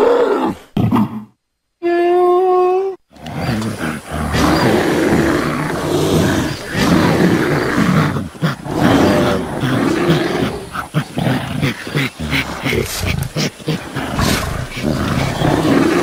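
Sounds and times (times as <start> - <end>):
rough loud animal calls: 3.2 - 16.0.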